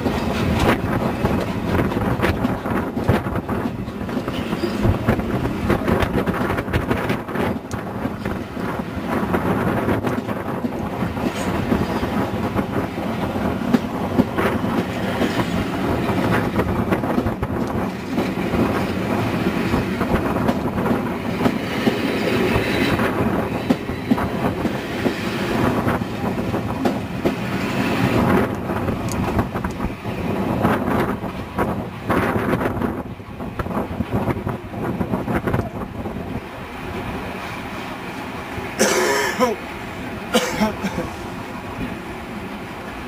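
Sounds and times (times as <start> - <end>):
train wheels clicking over rail joints: 0.0 - 35.9.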